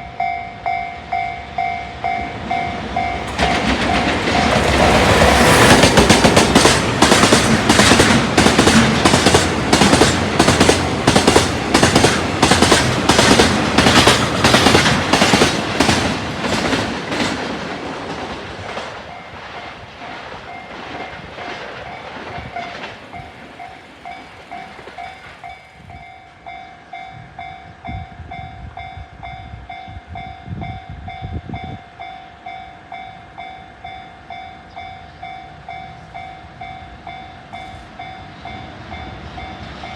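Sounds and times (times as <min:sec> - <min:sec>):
train wheels clacking over rails: 0:02.6 - 0:26.2.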